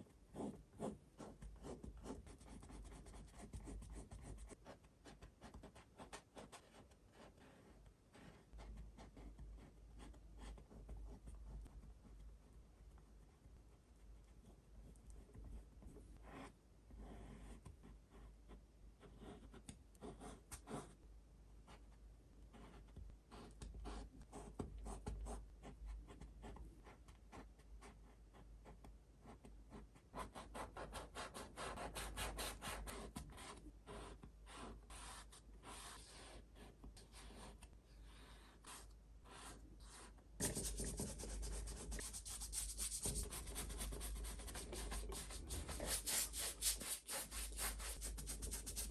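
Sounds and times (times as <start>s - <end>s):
paintbrush scratchy strokes: 37.2s - 48.9s.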